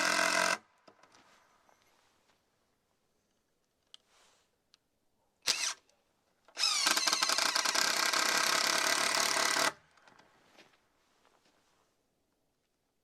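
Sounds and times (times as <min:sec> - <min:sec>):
power drill running: 0:00.0 - 0:00.6, 0:05.5 - 0:05.8, 0:06.6 - 0:09.8.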